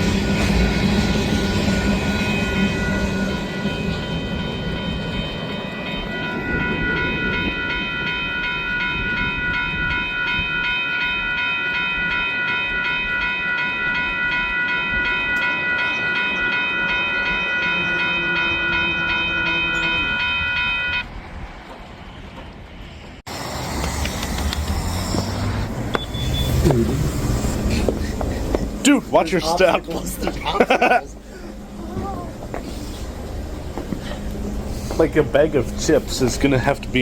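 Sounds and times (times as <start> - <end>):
steady high chord: 0.0 - 21.0, 28.8 - 31.8
train rumbling by: 0.0 - 37.0.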